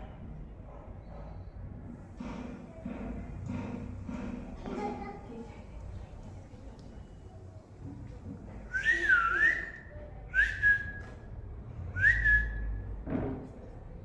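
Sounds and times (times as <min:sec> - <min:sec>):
person whistling: 0:08.7 - 0:11.1, 0:12.0 - 0:12.7.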